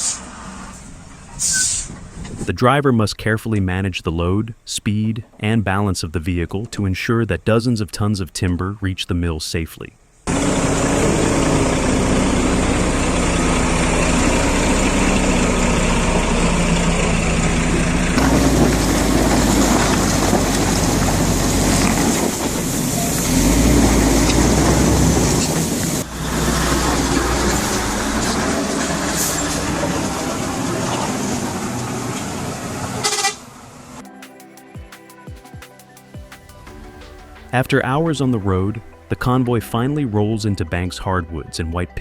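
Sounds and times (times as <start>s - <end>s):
road noise: 0.0s - 2.6s, 10.2s - 34.3s
truck diesel engine running: 10.3s - 34.0s.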